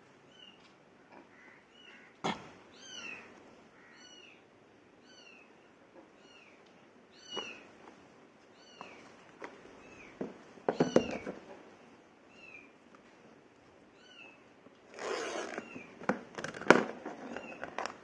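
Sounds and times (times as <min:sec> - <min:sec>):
small animal high calls: 0:01.8 - 0:04.4.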